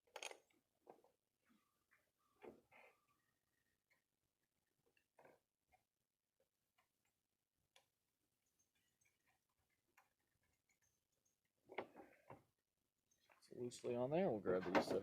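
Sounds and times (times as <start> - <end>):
bolts and nuts clicking and clinking: 0.0 - 1.2.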